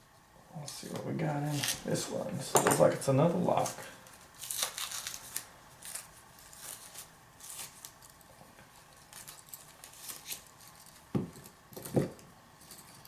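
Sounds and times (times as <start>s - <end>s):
wrapping rustling and scraping: 0.6s - 2.2s, 2.8s - 13.0s.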